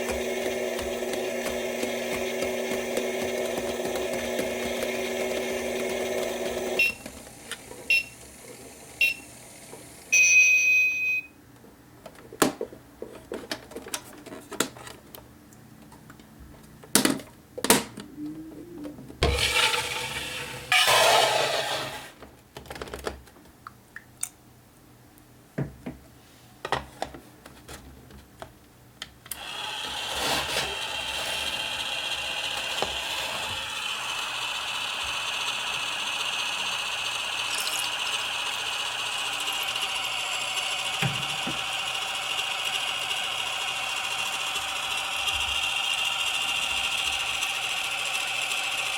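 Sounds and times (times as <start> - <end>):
short electronic beeps: 10.1 - 11.3
small motor whirring: 19.3 - 22.1, 29.4 - 48.9.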